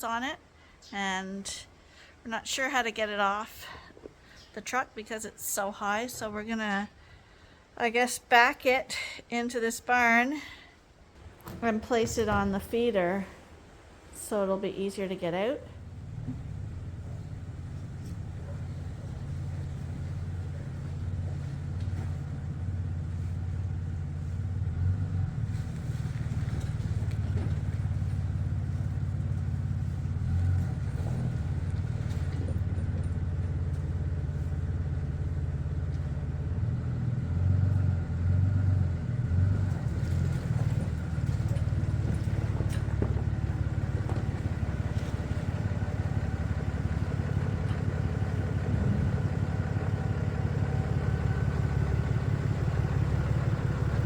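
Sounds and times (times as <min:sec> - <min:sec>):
pickup truck engine running: 0:15.7 - 0:54.0.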